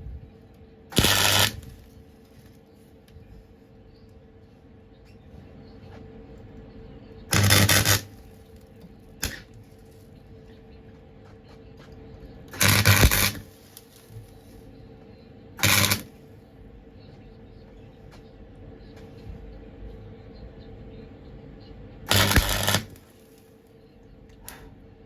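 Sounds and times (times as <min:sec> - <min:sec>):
welding arc bursts: 0:00.9 - 0:01.9, 0:07.3 - 0:08.2, 0:09.2 - 0:09.5, 0:12.5 - 0:14.1, 0:15.6 - 0:16.1, 0:22.1 - 0:23.2.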